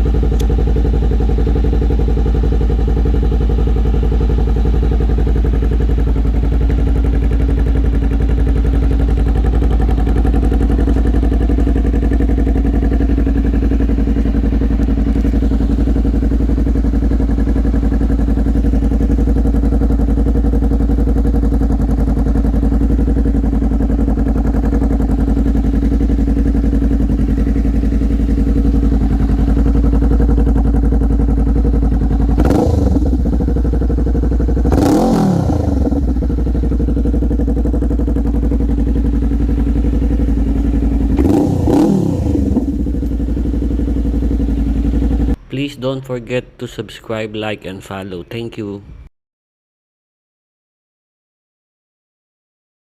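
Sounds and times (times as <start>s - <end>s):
motorcycle engine idling and revving: 0.0s - 49.1s.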